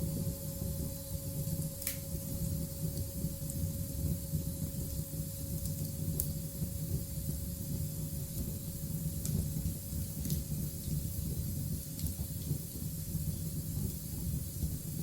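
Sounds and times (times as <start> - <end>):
faint scattered crackles: 1.6 - 2.1, 8.2 - 15.0.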